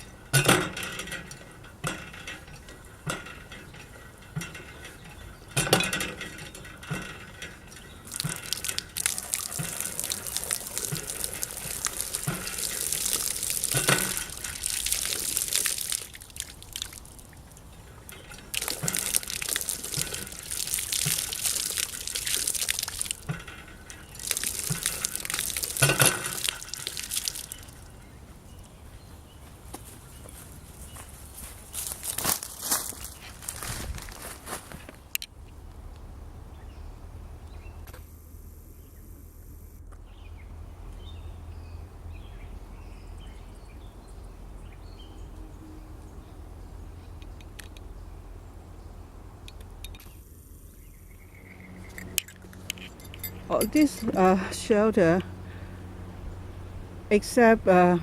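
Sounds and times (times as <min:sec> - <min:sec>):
water gushing and splashing: 0:06.9 - 0:27.9.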